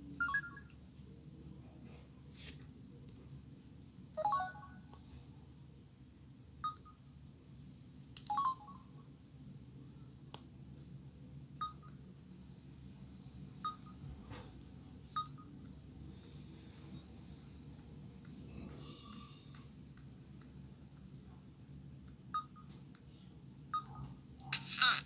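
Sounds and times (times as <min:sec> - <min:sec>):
phone electronic beeps: 0:24.6 - 0:25.0.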